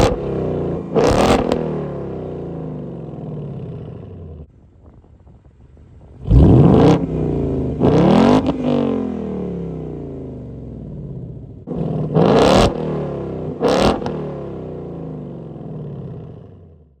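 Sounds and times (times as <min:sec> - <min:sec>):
car engine revving: 0:00.0 - 0:04.5, 0:06.2 - 0:16.5.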